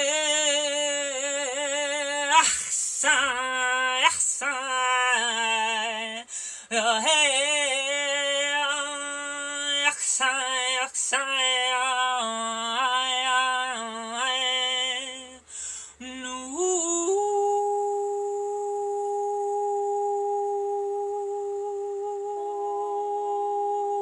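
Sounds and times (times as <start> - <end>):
woman singing wordless phrases: 0.0 - 24.0
breaths: 6.2 - 6.7, 15.4 - 16.0.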